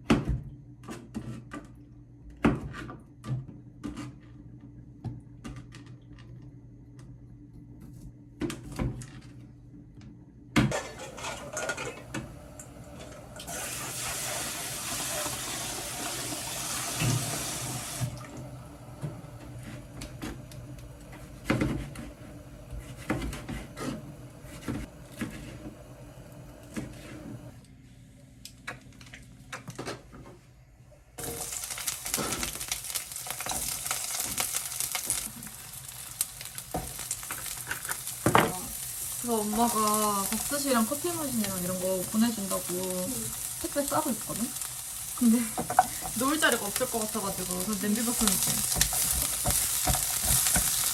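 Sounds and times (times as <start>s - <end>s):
pots and dishes clinking: 10.7s - 12.2s, 45.5s - 46.2s
tap running: 15.2s - 27.7s, 45.2s - 50.9s.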